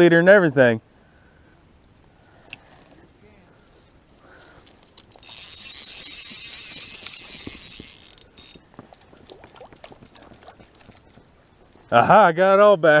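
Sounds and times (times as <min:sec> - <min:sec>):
fishing reel ratchet buzzing: 0:05.0 - 0:08.6.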